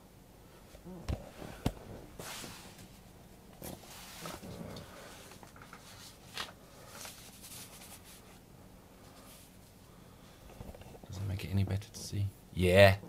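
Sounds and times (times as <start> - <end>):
rustling handling noises: 1.1 - 8.4.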